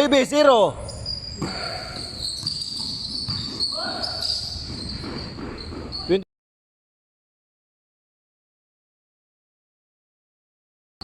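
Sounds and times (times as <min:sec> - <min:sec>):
basketball bouncing: 0:01.4 - 0:06.2.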